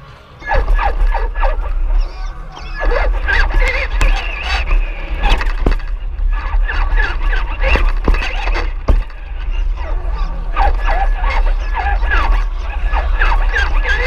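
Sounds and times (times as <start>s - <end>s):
crowd noise: 0.0s - 14.0s
low rumble: 0.0s - 14.0s
squeaky wavering pitched sounds: 0.0s - 14.0s
sharp knocks: 5.2s - 9.4s.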